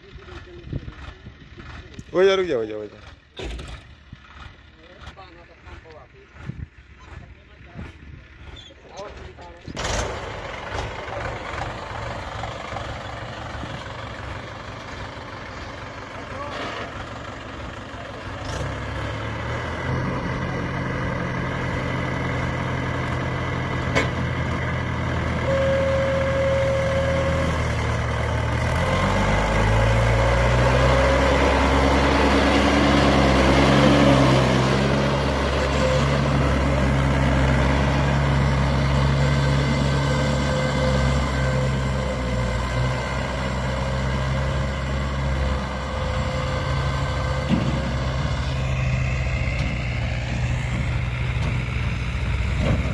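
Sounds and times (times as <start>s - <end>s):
diesel engine revving: 0.0s - 52.9s
short steady tone: 25.4s - 27.6s.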